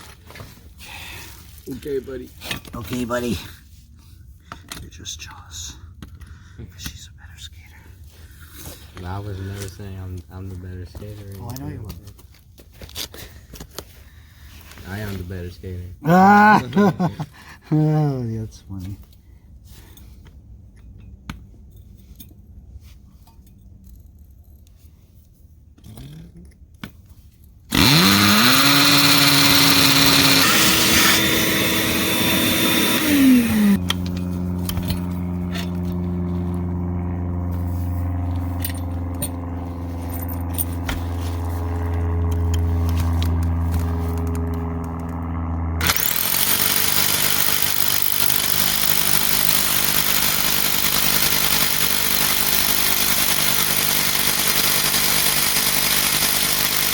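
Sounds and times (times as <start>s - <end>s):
hammer drill boring into concrete: 27.7s - 35.8s, 45.8s - 56.9s.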